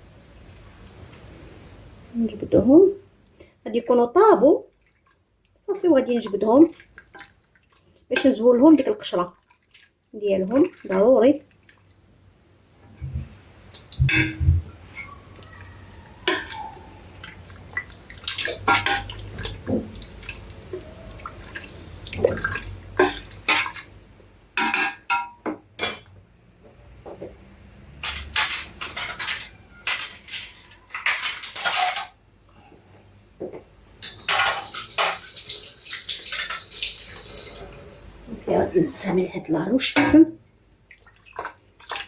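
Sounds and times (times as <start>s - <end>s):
utensil clinking against pot: 14.0s - 15.1s, 16.3s - 16.7s, 24.6s - 26.1s
utensil scraping pot: 16.2s - 16.8s, 18.5s - 20.5s.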